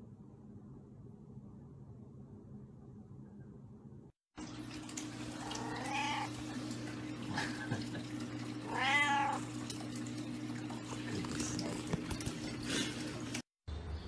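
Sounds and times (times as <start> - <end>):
cat meowing: 5.4 - 6.4, 8.7 - 9.4.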